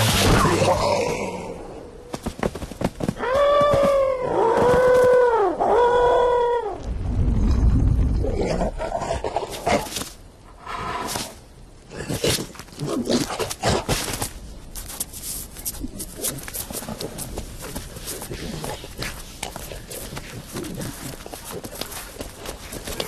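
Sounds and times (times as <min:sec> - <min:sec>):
lion roar: 0:04.5 - 0:09.9.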